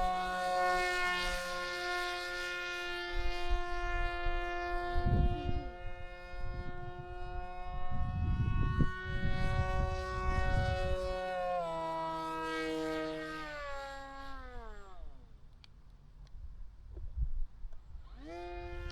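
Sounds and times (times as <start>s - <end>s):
electric motor whine: 0.0s - 15.8s, 17.7s - 18.9s
wind buffeting microphone: 3.2s - 15.2s, 16.3s - 18.9s.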